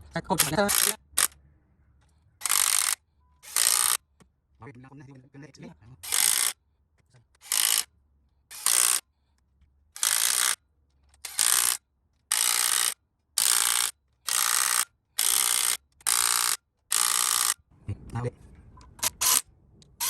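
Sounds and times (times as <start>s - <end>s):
ratchet wrench ratcheting: 0.4s - 1.4s, 2.4s - 4.0s, 6.0s - 6.6s, 7.4s - 7.9s, 8.5s - 9.0s, 9.9s - 17.6s, 19.0s - 20.0s.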